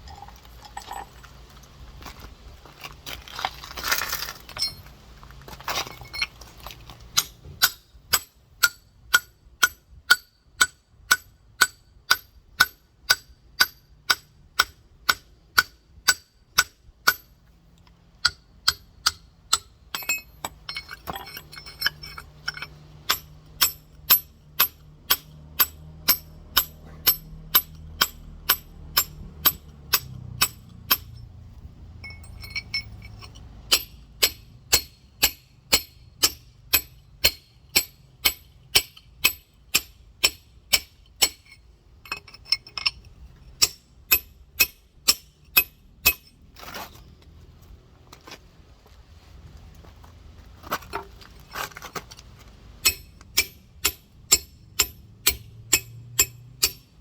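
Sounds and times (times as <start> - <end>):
hammer striking stone: 7.2 - 17.3, 18.2 - 31.2, 33.7 - 41.5, 52.8 - 56.9.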